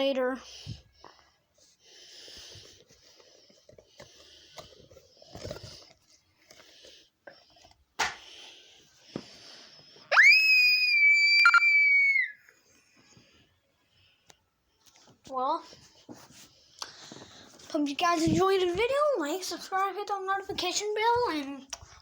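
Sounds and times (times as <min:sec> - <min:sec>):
soft breathing: 0:00.3 - 0:10.1, 0:12.5 - 0:17.8.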